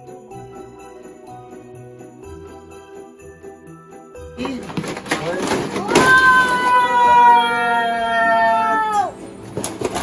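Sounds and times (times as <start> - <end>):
festive holiday tune with sleigh bells: 0.0 - 7.3.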